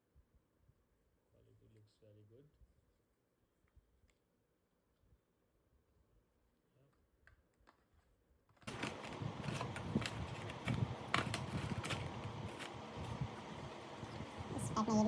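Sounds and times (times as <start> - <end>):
packaging rustling and clicking: 8.6 - 14.6.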